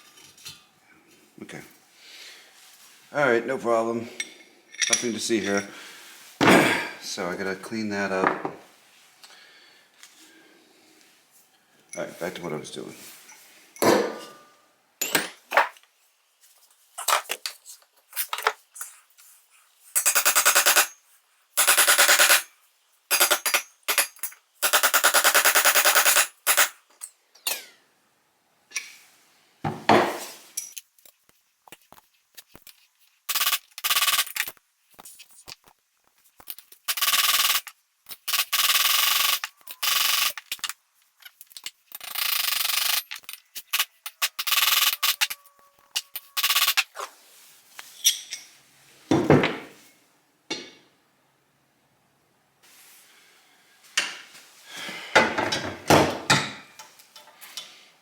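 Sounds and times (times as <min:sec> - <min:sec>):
handling clunks and knocks: 0:08.2 - 0:08.6, 0:13.8 - 0:14.4, 0:55.2 - 0:56.8
power tool rattling: 0:23.1 - 0:26.8.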